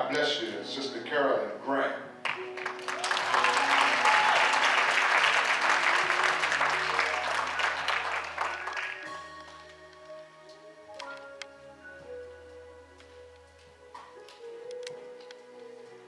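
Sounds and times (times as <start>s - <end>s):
music with long held chords: 2.0s - 16.0s
congregation applauding: 2.2s - 9.7s.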